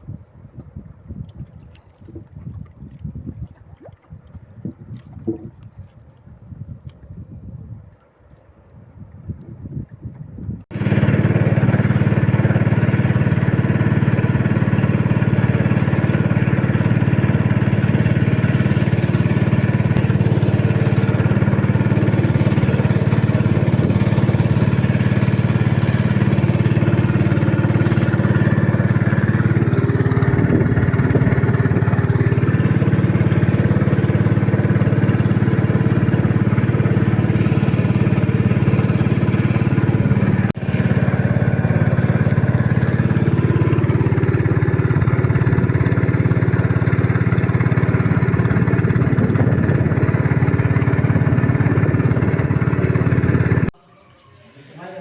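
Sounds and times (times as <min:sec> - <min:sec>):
outboard motor droning: 0:00.0 - 0:08.9, 0:10.5 - 0:53.8.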